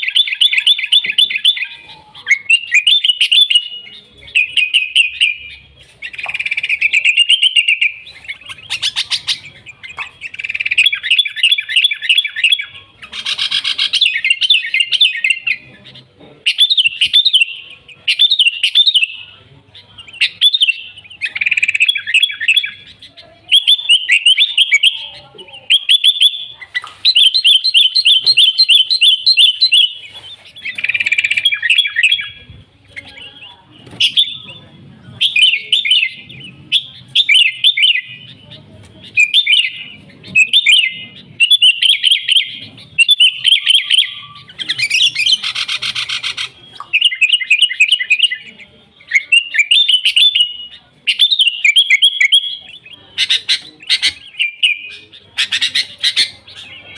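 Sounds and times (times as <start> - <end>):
bird chirping song: 0.0 - 56.9.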